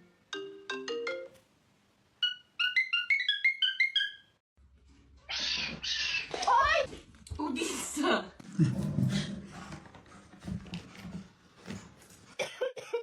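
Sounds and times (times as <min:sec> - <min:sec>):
electronic ringtone melody: 0:02.2 - 0:04.3.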